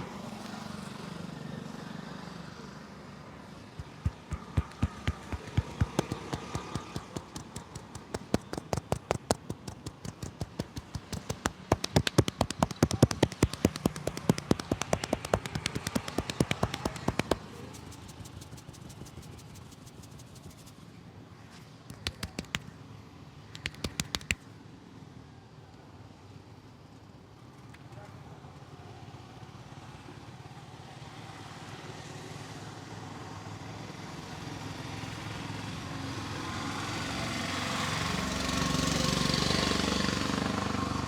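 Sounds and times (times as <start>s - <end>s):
hands slapping and tapping on head: 3.8s - 20.7s, 21.9s - 22.7s, 23.6s - 24.4s.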